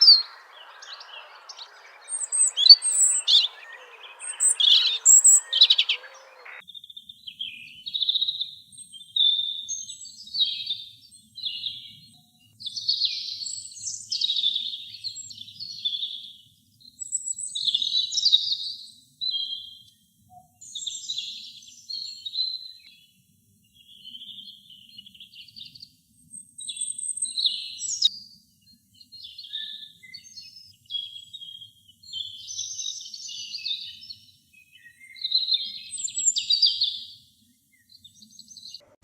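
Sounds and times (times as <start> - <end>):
robin singing: 0.0 - 6.6.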